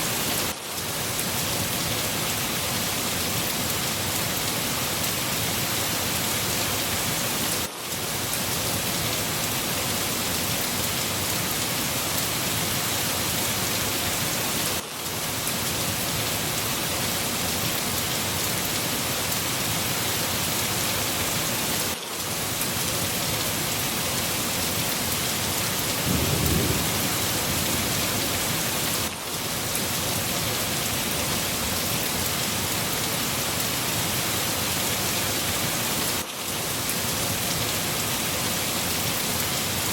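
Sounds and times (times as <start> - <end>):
heavy rain: 0.0 - 39.9
low rumble of thunder: 26.0 - 29.0.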